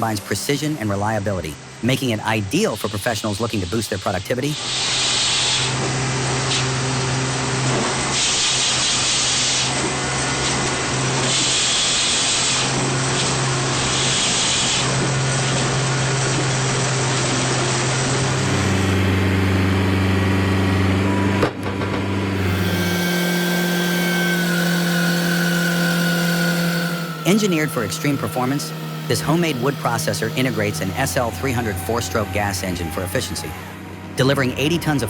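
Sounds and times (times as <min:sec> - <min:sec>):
firewood processor engine running: 0:04.6 - 0:35.0
high hissing noise: 0:22.4 - 0:35.0.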